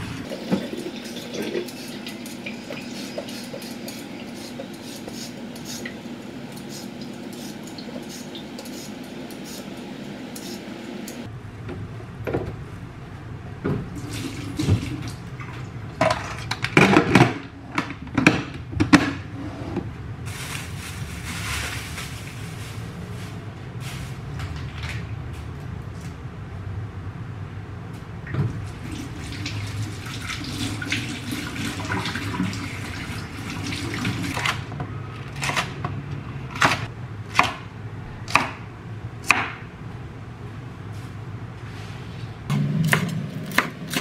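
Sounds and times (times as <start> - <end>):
water running into sink: 28.8 - 34.6.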